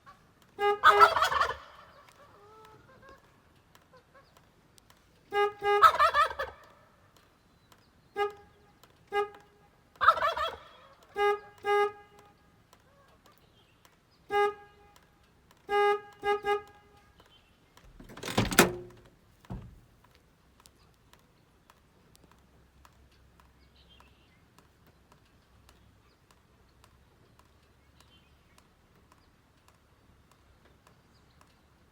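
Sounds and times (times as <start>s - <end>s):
turkey gobbling: 0.8s - 3.2s, 5.7s - 6.7s, 10.0s - 10.9s
horn honks: 5.3s - 6.2s, 8.2s - 8.5s, 11.2s - 12.2s, 14.3s - 15.0s, 15.7s - 17.0s, 17.9s - 19.8s.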